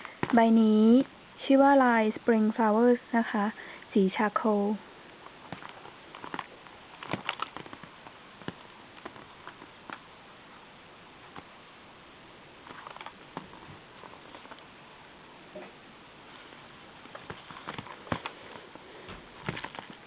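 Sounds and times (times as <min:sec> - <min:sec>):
purse rustling: 0:05.4 - 0:10.0, 0:16.4 - 0:20.0.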